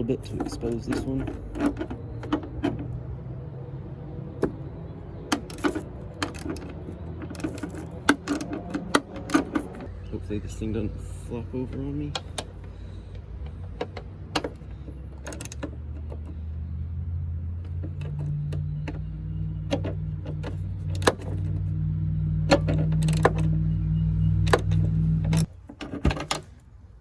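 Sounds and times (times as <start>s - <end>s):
metal parts clicking and knocking: 0.2s - 2.9s, 5.3s - 10.0s, 13.4s - 16.4s, 17.6s - 21.6s, 22.5s - 23.5s.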